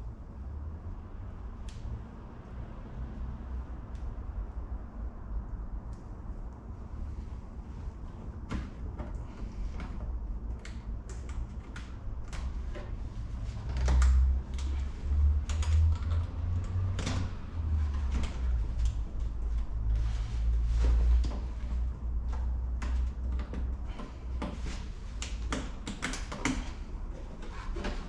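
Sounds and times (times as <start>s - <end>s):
hard parts clicking and knocking: 22.2s - 28.0s.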